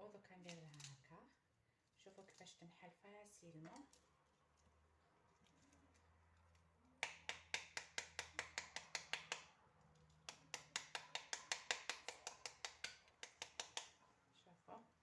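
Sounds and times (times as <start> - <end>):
rapid taps on pomegranate rind: 7.0 - 14.1.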